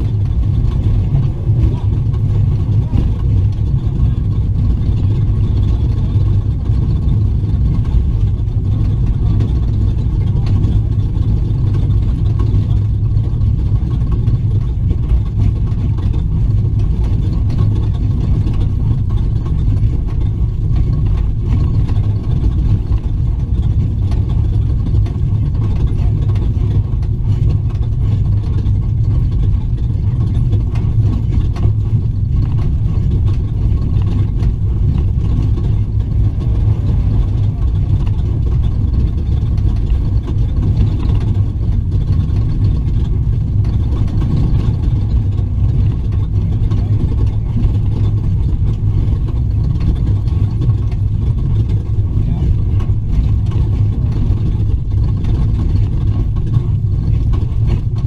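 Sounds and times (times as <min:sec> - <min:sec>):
rattling and road noise: 0:00.0 - 0:58.0
truck engine rumbling under load: 0:00.0 - 0:58.0.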